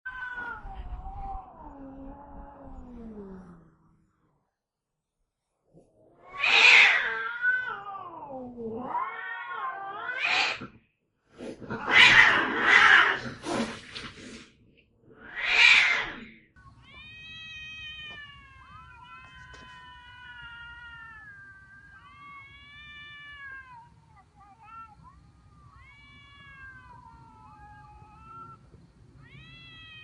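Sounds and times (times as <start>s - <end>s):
cat yowling: 6.2s - 10.6s, 11.8s - 13.2s, 15.2s - 16.2s, 16.8s - 28.6s
cats hissing and spitting: 9.8s - 14.6s.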